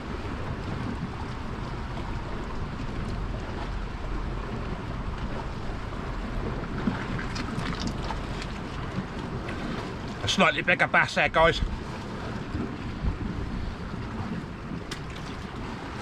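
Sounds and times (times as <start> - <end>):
rush of the sea: 0.0 - 16.0
wind buffeting microphone: 0.0 - 16.0.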